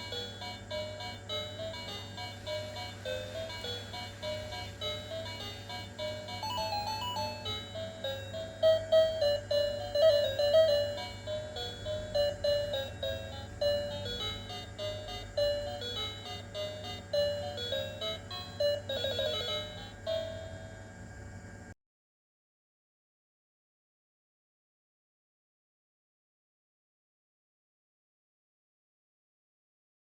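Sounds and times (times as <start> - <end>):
tinny electronic beeping melody: 0.0 - 20.9
steady low hum: 0.0 - 21.8.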